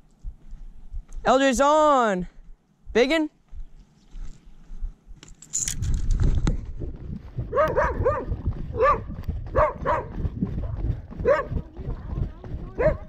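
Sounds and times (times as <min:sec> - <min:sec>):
rumbling handling noise: 0:05.0 - 0:13.0
dog yipping: 0:07.6 - 0:10.1.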